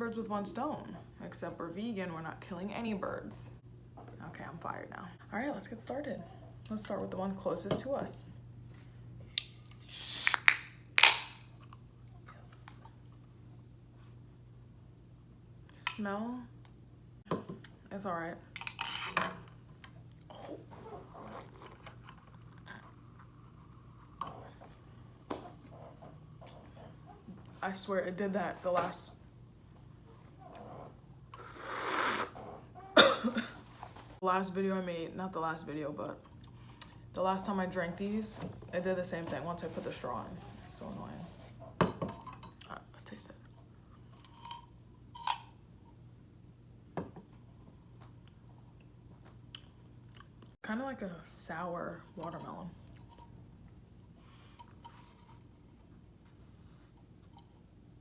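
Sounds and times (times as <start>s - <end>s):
low electrical hum: 0.0s - 58.0s
can and straw clicking: 9.7s - 11.4s.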